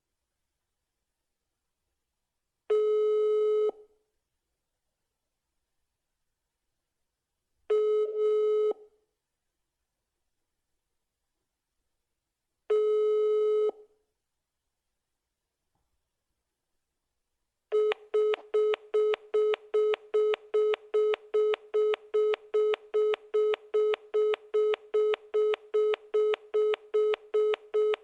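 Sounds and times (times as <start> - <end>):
phone call tone beeps: 17.7 - 28.0.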